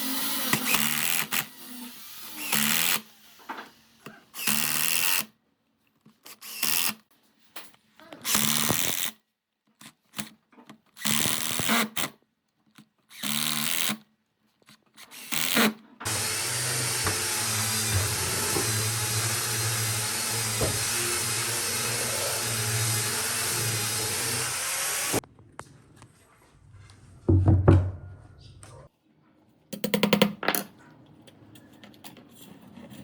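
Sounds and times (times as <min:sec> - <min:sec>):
power drill bursts: 0:00.0 - 0:03.5, 0:15.1 - 0:25.2
motorised tool running steadily: 0:16.1 - 0:25.2.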